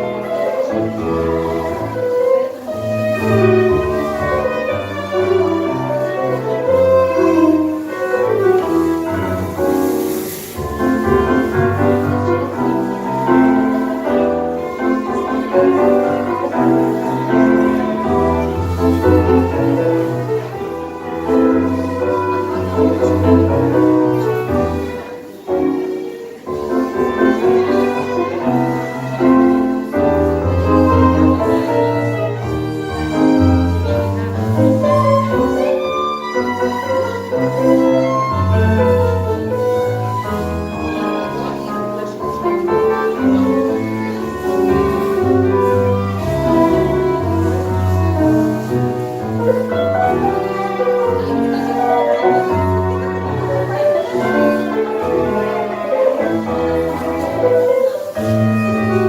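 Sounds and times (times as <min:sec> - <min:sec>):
live tango ensemble: 0:00.0 - 0:59.0.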